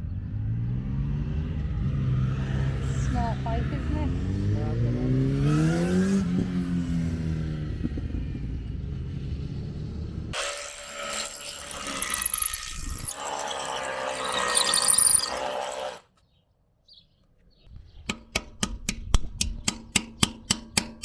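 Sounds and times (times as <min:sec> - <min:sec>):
power tool whining: 0:10.3 - 0:16.2.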